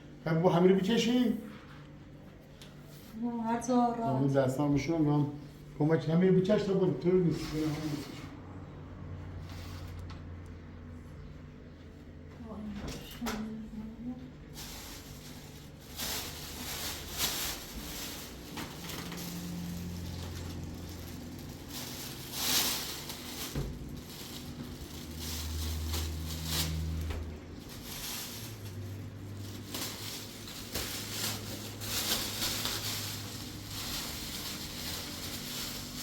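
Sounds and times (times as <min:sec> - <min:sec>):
rough scraping noises: 0:07.2 - 0:08.4.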